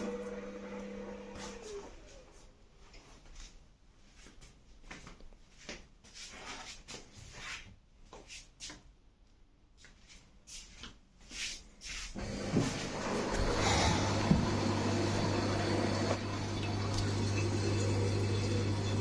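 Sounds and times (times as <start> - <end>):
washing machine hum and hiss: 0.0 - 2.5, 11.3 - 19.0.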